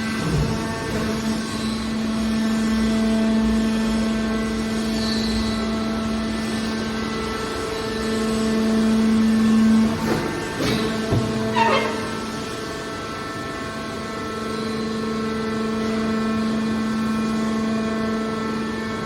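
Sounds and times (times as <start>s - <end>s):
baler machine hum: 5.7s - 13.4s.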